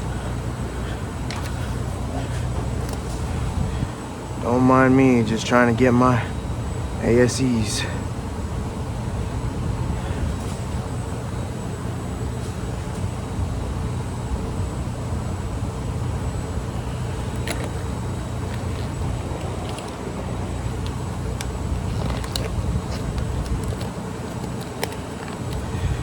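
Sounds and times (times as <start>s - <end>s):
low machine rumble and hum: 0.0s - 26.0s.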